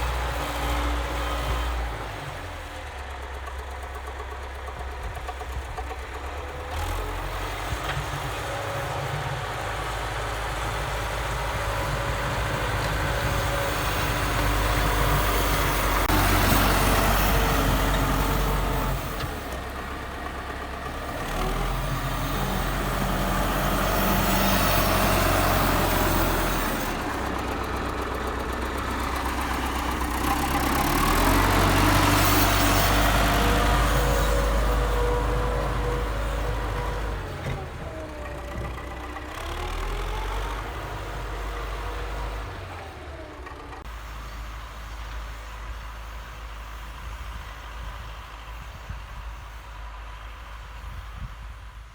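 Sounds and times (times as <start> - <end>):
excavator diesel engine running: 0.0 - 51.8.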